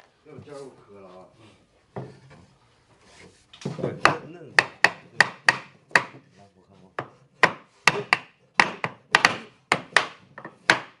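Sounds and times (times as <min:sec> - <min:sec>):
mallet knocking on wood: 0:03.7 - 0:06.2, 0:07.0 - 0:11.0.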